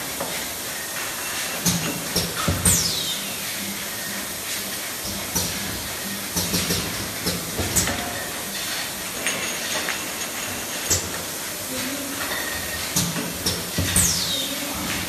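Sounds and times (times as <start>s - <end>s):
machine hiss and hum: 0.0s - 15.0s
cylinders clacking: 6.4s - 15.0s.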